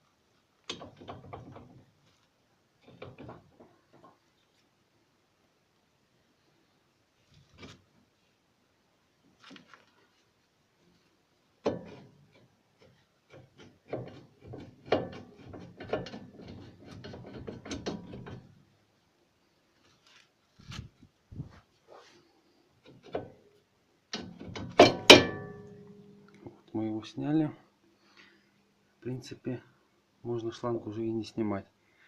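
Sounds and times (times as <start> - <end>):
metal clicks and knocks: 0.6 - 2.0, 2.8 - 4.2, 11.6 - 18.6, 24.1 - 25.9
loud metal clanks: 24.6 - 25.8
short metallic ring: 25.0 - 25.8.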